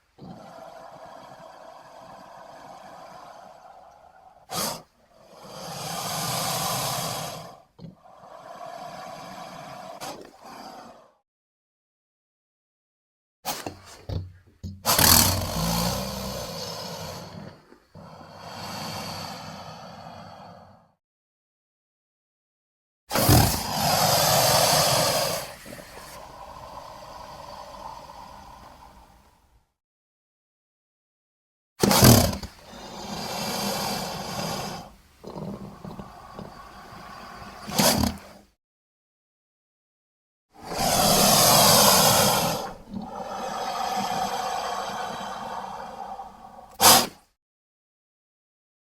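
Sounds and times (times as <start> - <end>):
creature breathy exhalations: 0.0 - 11.2, 15.4 - 21.0, 23.2 - 29.6, 32.1 - 38.5, 40.6 - 47.1.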